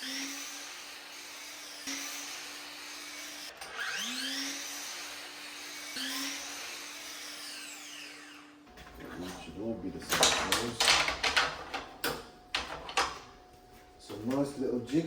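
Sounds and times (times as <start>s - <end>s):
mitre saw motor whining: 0.0s - 8.7s.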